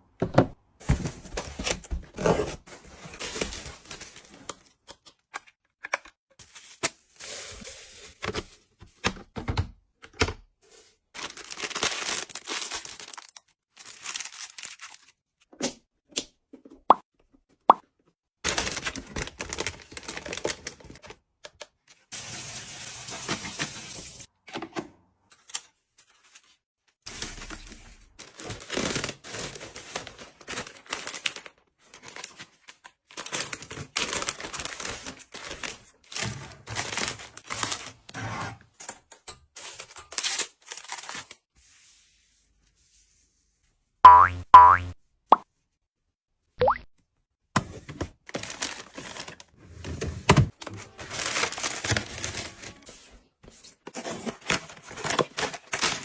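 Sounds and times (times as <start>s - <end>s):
plastic packaging rustling: 11.2s - 15.0s, 50.6s - 53.1s.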